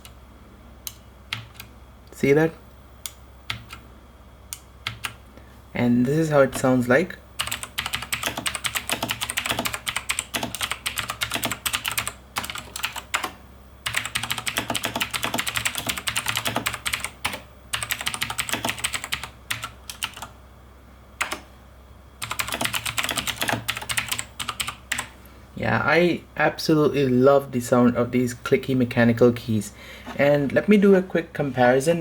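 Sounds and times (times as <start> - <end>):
mechanical keyboard typing: 3.5 - 3.8, 4.8 - 5.2, 7.4 - 20.3, 21.2 - 21.4, 22.2 - 25.1.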